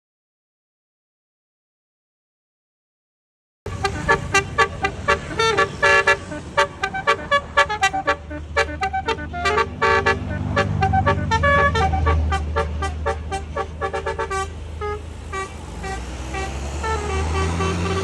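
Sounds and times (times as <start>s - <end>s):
bus engine running: 3.7s - 18.0s
multi-tone bus horn tune: 3.7s - 18.0s.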